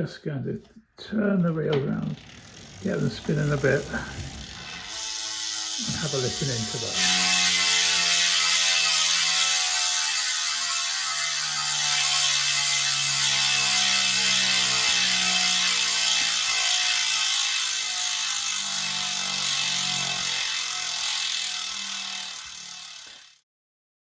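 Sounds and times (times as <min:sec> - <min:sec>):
bicycle freehub ratchet buzzing: 0:02.2 - 0:23.4.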